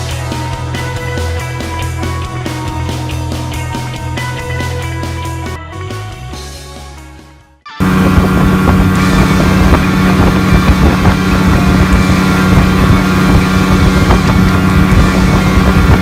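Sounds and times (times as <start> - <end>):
boat motor running: 7.8 - 16.0
wind buffeting microphone: 7.8 - 16.0.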